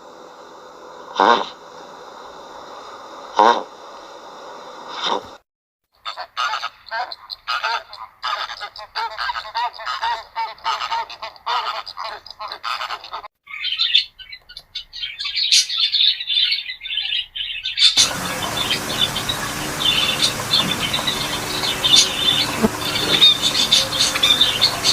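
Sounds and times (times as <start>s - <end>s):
steady hiss: 0.0s - 5.4s, 18.0s - 24.9s
high bird chirps: 13.5s - 24.9s
repeated pitched bird calls: 13.5s - 24.9s.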